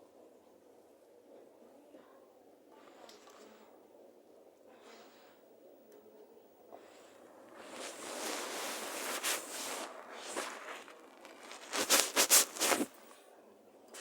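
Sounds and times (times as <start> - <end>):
rustling and scraping: 6.8 - 13.2.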